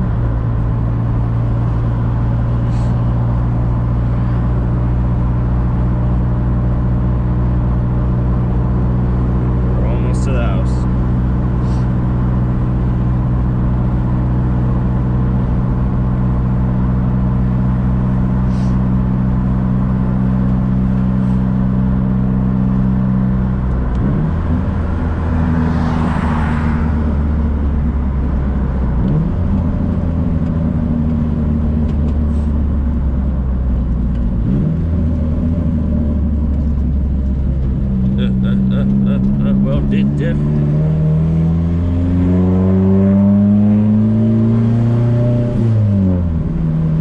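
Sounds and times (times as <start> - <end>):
car engine running: 0.0 - 47.0.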